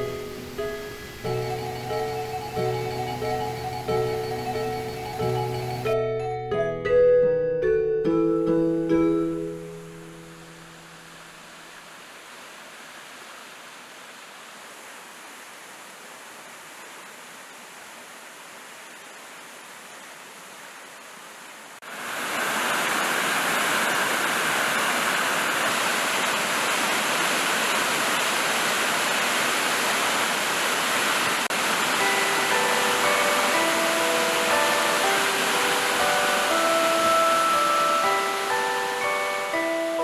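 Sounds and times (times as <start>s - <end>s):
stream water rushing: 0.0s - 6.0s, 8.7s - 40.0s.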